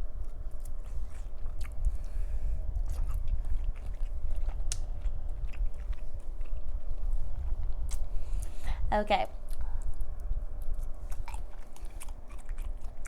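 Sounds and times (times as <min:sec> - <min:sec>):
low steady rumble: 0:00.0 - 0:13.0
person chewing: 0:00.2 - 0:08.6, 0:09.4 - 0:13.0
wet mouth clicks and smacks: 0:02.8 - 0:06.8, 0:07.8 - 0:08.5.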